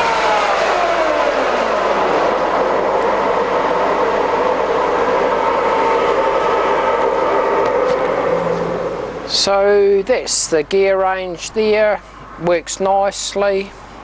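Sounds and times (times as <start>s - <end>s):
lathe gear whine: 0.0s - 10.4s.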